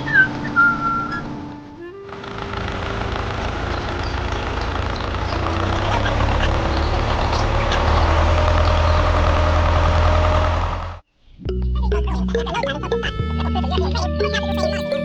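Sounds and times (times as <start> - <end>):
small tractor engine running: 0.0 - 11.0.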